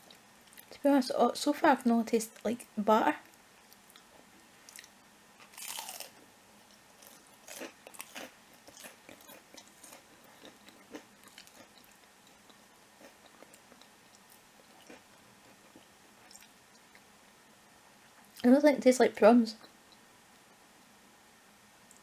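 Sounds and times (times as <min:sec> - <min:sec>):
person chewing crunchy food: 0:04.7 - 0:17.0.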